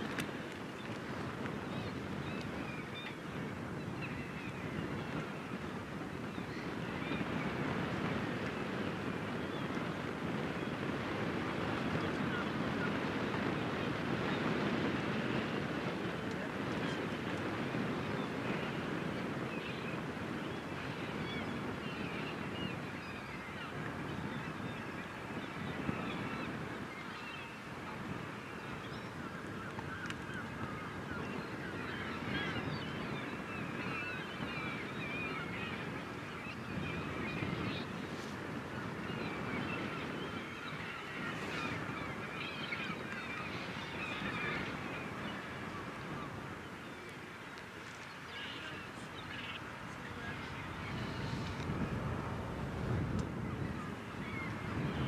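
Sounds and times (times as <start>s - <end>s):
water: 0.0s - 55.0s
wind: 0.0s - 55.0s
flock of birds calling: 20.7s - 52.1s, 52.9s - 55.0s.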